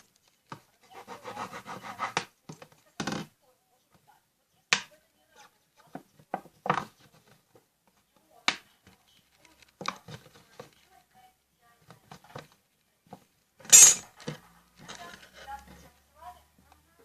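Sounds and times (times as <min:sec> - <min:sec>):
plastic tub being cut: 0:00.8 - 0:02.3.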